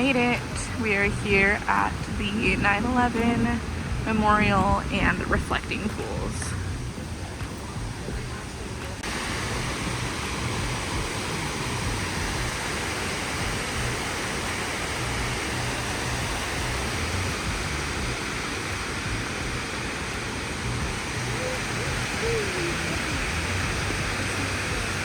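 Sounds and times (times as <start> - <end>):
water rushing into basins: 8.5 - 25.0.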